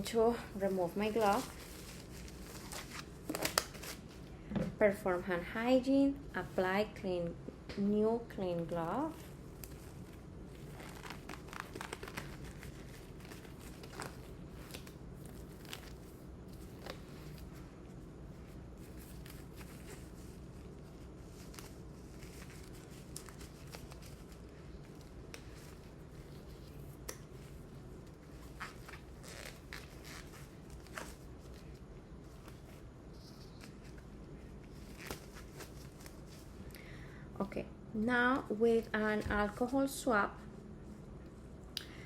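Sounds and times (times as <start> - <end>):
gloves crinkling and rustling: 0.0 - 4.5, 8.3 - 37.0
steady low hum: 0.0 - 42.0.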